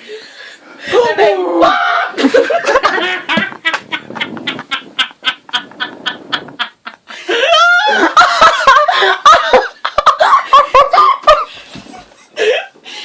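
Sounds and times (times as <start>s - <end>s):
person laughing hard: 2.1s - 12.8s.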